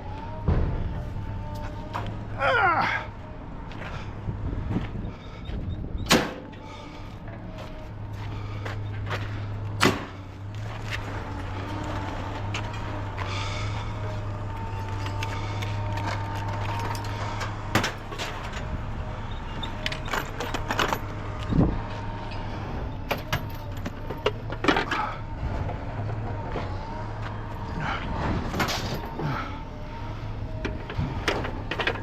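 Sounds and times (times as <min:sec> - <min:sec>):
vehicle engine idling: 0:00.0 - 0:32.0
sharp knocks and clanks: 0:00.3 - 0:02.1.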